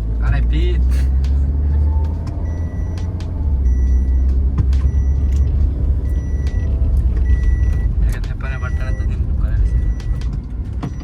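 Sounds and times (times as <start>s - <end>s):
road vehicle rumble: 0.0s - 11.0s
short high beeps: 3.7s - 8.0s.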